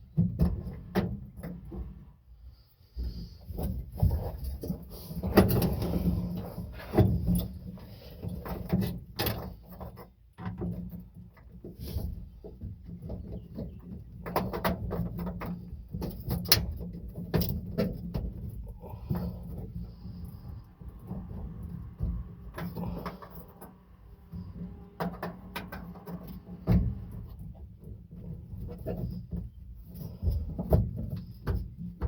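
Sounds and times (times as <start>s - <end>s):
hands working metal parts: 12.6s - 32.0s.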